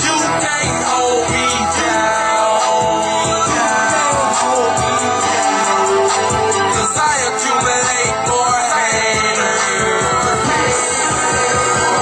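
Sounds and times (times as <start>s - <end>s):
hip hop music with steady beat: 0.0s - 12.0s.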